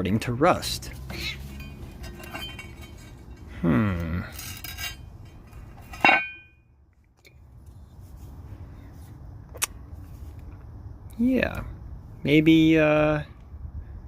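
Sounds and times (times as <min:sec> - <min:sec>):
sharp metallic clank: 0:01.1 - 0:03.5, 0:04.3 - 0:06.6.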